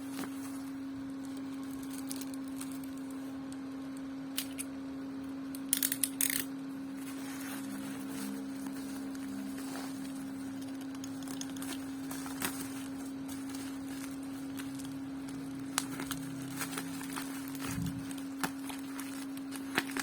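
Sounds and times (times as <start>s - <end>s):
low electrical hum: 0.0s - 20.0s
packaging crackling and snipping: 1.2s - 3.1s, 5.6s - 6.5s, 8.8s - 20.0s.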